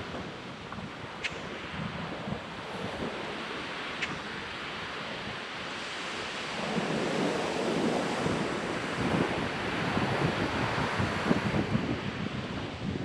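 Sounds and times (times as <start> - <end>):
surf washing onto beach: 0.0 - 13.0
wind buffeting microphone: 0.0 - 13.0.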